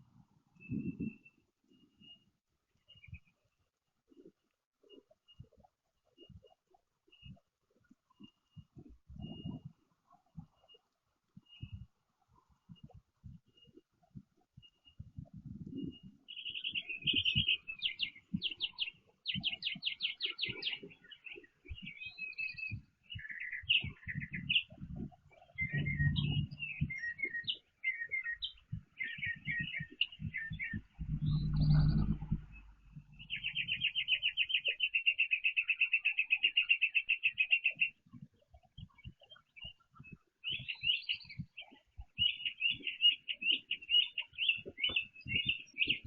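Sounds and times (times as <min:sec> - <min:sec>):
songbirds chirping and trilling: 0:00.0 - 0:46.0
low rumbling thumps: 0:24.8 - 0:27.0, 0:29.6 - 0:34.3.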